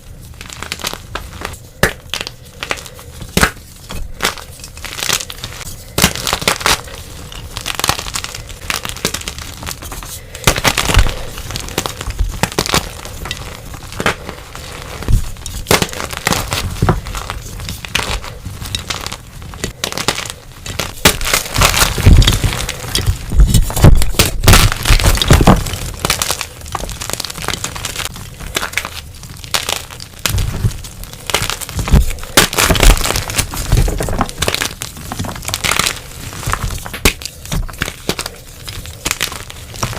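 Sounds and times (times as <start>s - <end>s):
chalk crunching and cracking: 0.0s - 39.9s.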